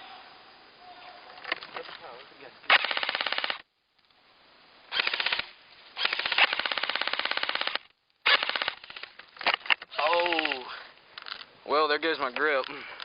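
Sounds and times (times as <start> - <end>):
airsoft gun firing bursts: 2.7 - 3.6, 4.9 - 9.0.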